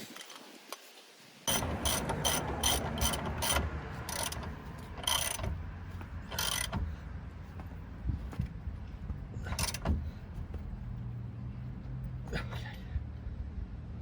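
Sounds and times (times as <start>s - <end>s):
ratchet wrench clicking: 1.5s - 5.6s, 6.2s - 7.0s, 9.6s - 9.8s.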